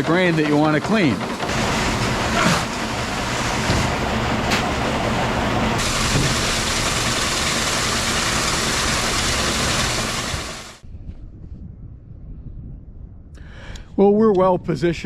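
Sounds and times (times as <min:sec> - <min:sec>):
grain cleaning machine clattering: 0:00.0 - 0:10.8
faint low rumble: 0:10.8 - 0:13.6.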